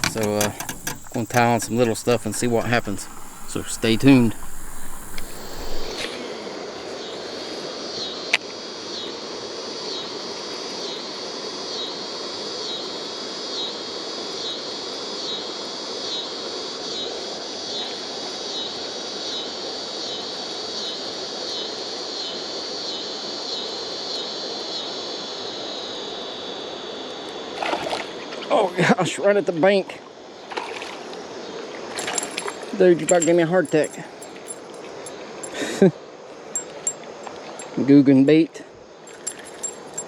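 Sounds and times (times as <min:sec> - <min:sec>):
river water rushing: 0:00.0 - 0:06.0
insect chorus pulsing: 0:00.0 - 0:06.1, 0:07.8 - 0:40.0
sharp click: 0:00.0 - 0:06.1.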